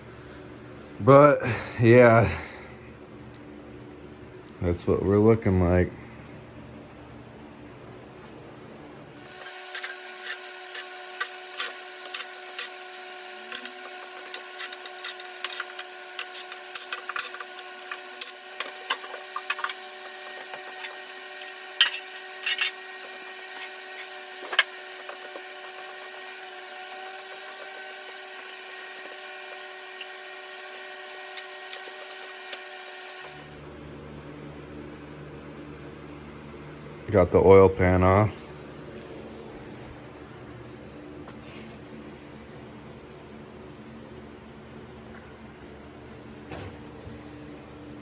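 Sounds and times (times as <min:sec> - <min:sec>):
steady hum: 0:00.0 - 0:48.0
hand tools clicking and clinking: 0:20.4 - 0:22.8.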